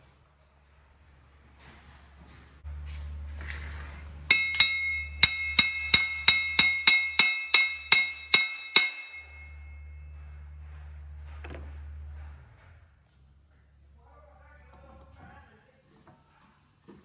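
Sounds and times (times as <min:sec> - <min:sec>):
hammer striking steel: 0:04.3 - 0:10.3.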